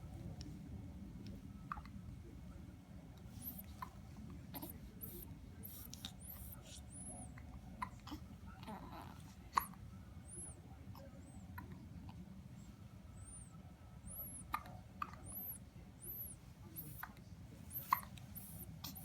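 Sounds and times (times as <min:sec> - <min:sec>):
faint high-pitched chirps: 0:13.1 - 0:19.0.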